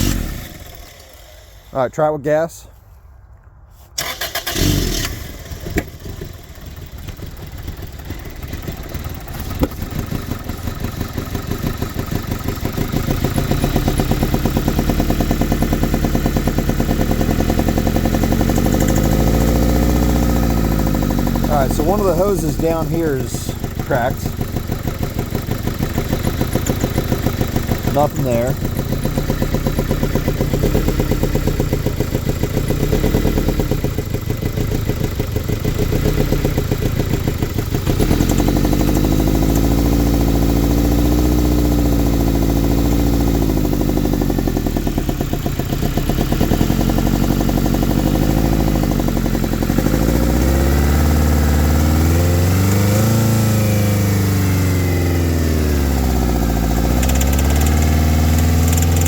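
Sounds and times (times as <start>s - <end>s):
car engine running unevenly: 5.7s - 59.0s.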